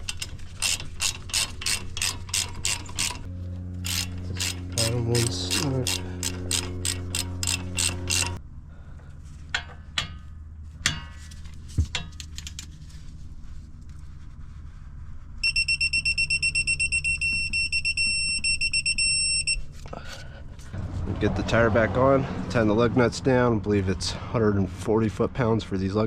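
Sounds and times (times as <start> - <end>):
power ratchet clicking: 0.0 - 8.4.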